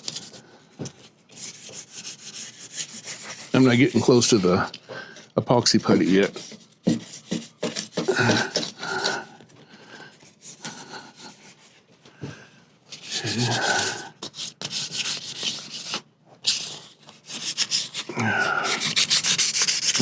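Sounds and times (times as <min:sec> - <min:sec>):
sandpaper rasping on wood: 0:01.4 - 0:04.6, 0:05.8 - 0:08.8, 0:13.0 - 0:20.0.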